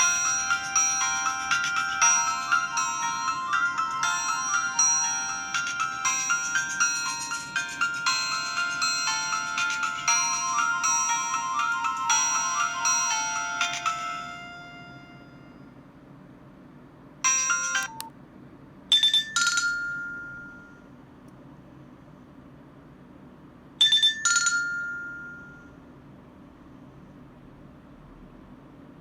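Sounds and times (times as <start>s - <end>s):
bright two-note chime: 0.0s - 15.6s
phone ringtone melody: 0.0s - 15.6s, 17.3s - 18.0s.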